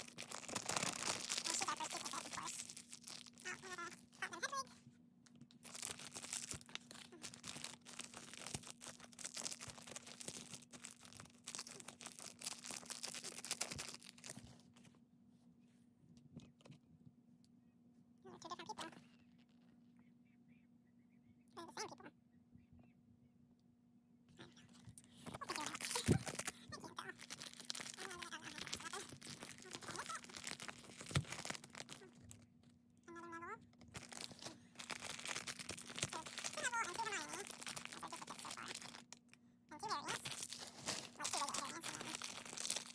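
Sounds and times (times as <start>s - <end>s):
plastic packaging crinkling and tearing: 0.0s - 4.3s, 5.5s - 14.6s, 25.2s - 32.5s, 33.7s - 42.9s.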